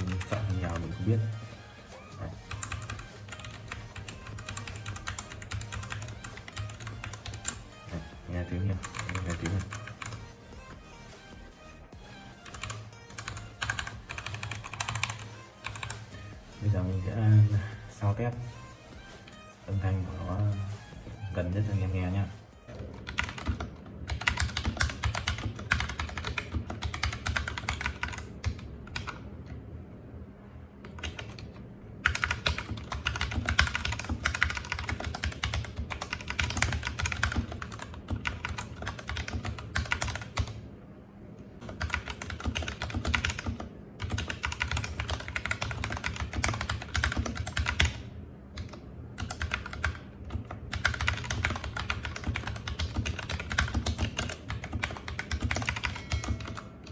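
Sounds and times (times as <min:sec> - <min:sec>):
mechanical keyboard typing: 0:00.0 - 0:01.2, 0:02.4 - 0:07.7, 0:08.4 - 0:10.3, 0:12.4 - 0:16.2, 0:22.7 - 0:29.2, 0:30.8 - 0:40.6, 0:41.6 - 0:56.9.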